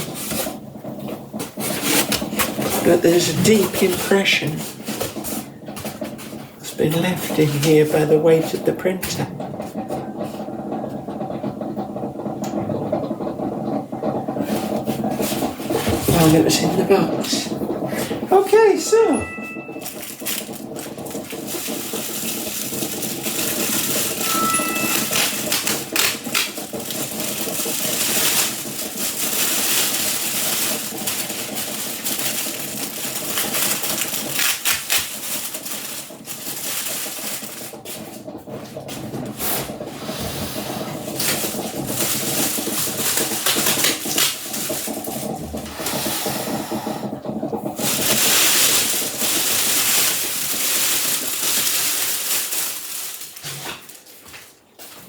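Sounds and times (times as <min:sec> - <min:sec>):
packaging rustling and crinkling: 0:00.0 - 0:09.9, 0:19.0 - 0:46.1, 0:47.7 - 0:55.0.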